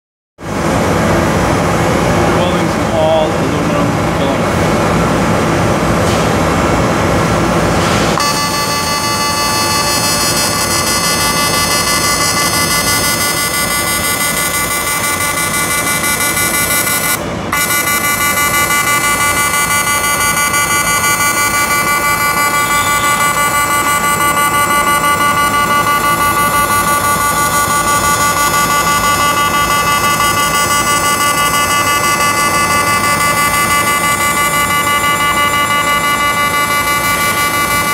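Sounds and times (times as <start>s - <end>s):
welding arc buzzing: 8.1s - 37.9s.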